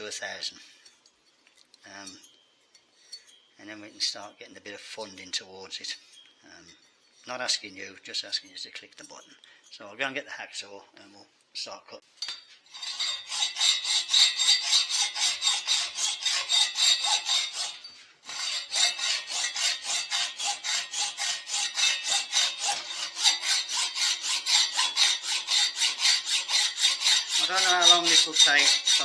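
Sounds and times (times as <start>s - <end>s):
hacksaw cutting metal: 12.2s - 29.0s.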